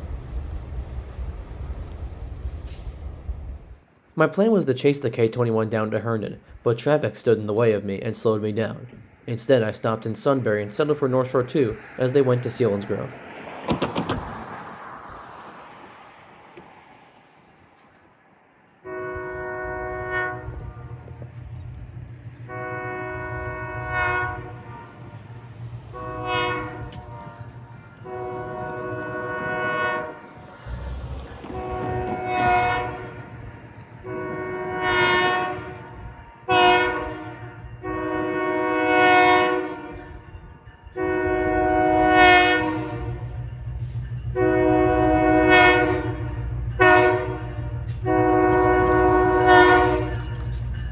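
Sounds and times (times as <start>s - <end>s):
locomotive air horn: 18.8s - 21.1s, 22.4s - 25.0s, 25.9s - 27.4s, 28.0s - 33.4s, 34.0s - 40.1s, 41.0s - 43.3s, 44.3s - 50.5s
locomotive engine rumbling: 18.8s - 50.9s.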